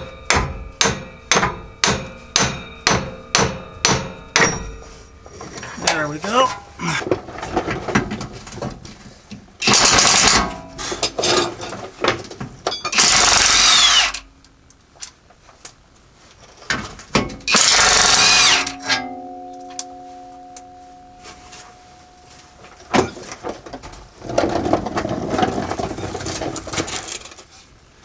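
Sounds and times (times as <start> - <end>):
impact wrench on bolts: 0.0 - 5.9, 9.6 - 11.7, 12.7 - 14.3, 17.2 - 20.0
steady hum: 0.0 - 7.8, 17.5 - 23.4
tools and parts clanking: 0.0 - 27.5.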